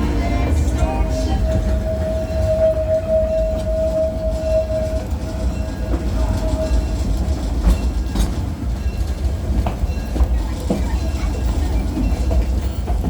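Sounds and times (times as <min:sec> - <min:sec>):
ride train rumbling on track: 0:00.0 - 0:13.0
wheels clicking and knocking: 0:04.6 - 0:13.0.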